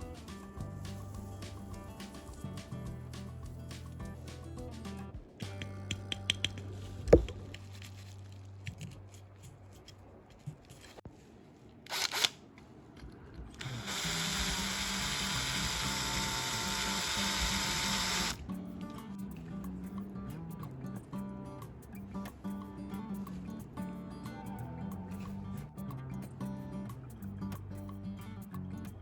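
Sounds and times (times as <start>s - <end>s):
small power tool running: 13.6s - 18.4s.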